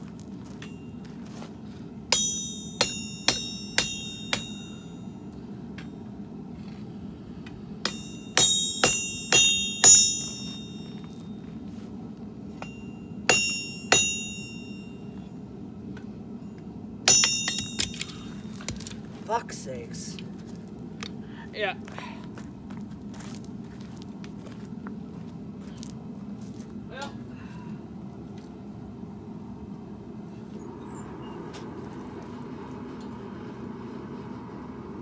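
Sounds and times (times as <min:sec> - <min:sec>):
forge burner rushing: 0:02.1 - 0:06.0, 0:06.9 - 0:11.1, 0:29.8 - 0:35.0
hammer striking steel on anvil: 0:02.1 - 0:06.0, 0:07.4 - 0:11.3, 0:12.6 - 0:15.2, 0:17.1 - 0:18.8.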